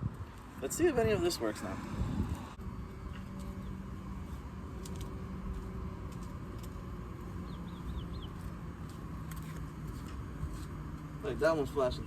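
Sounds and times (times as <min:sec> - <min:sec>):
steady low hum: 0:00.0 - 0:12.0
bird chirping: 0:07.2 - 0:08.6.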